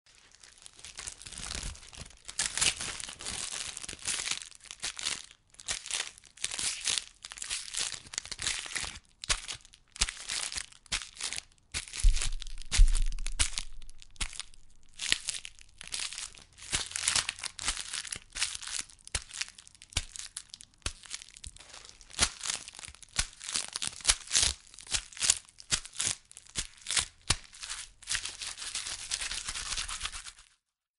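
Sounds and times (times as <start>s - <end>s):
parcel tape crinkling: 0.1s - 30.6s
heavy low thump: 12.1s - 13.4s.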